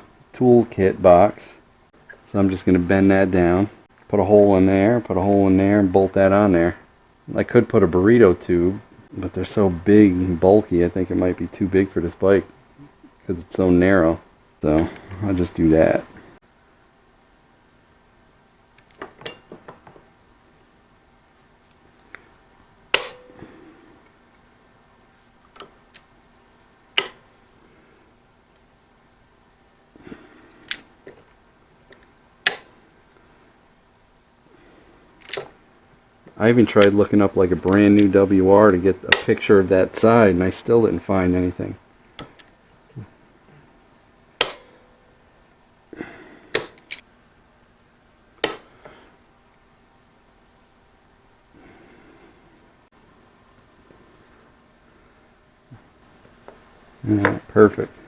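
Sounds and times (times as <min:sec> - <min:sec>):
metallic ring: 0:22.9 - 0:23.7, 0:44.4 - 0:45.2.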